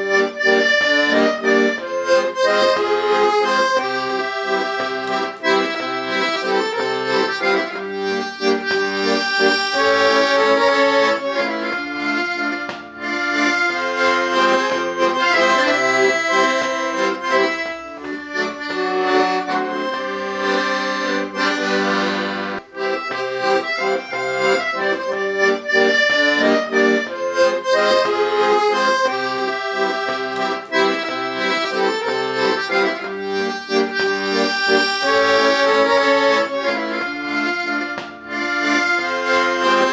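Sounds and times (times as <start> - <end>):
accordion playing a tune: 0.0 - 39.9.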